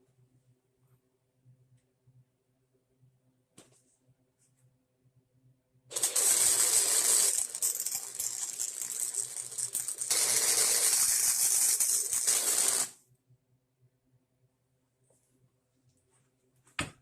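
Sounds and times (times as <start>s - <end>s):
arc welding crackling: 5.9s - 13.0s.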